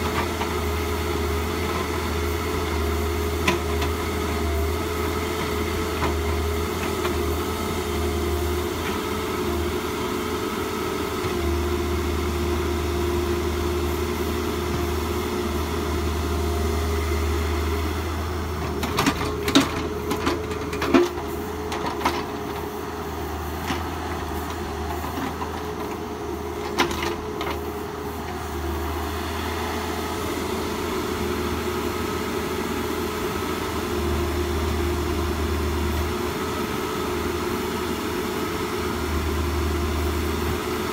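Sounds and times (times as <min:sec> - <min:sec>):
engine running: 0:00.0 - 0:40.9.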